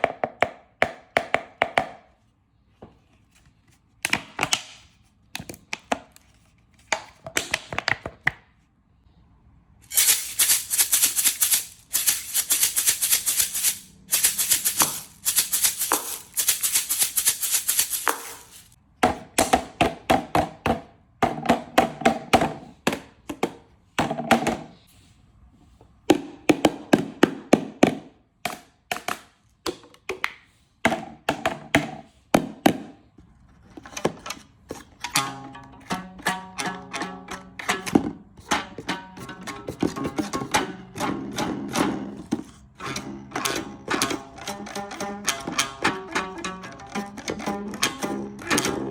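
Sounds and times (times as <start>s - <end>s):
shaken rattling: 9.8s - 18.8s.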